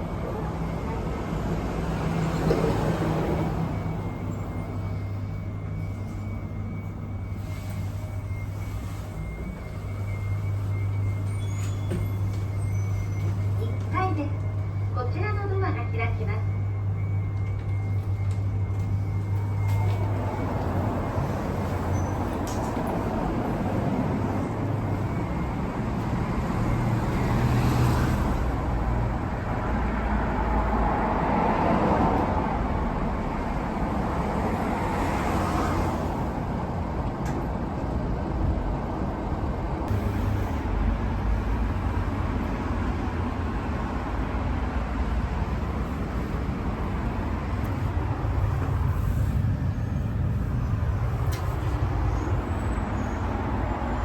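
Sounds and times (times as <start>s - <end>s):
traffic rumble: 0.0s - 54.0s
vehicles passing: 0.0s - 54.0s.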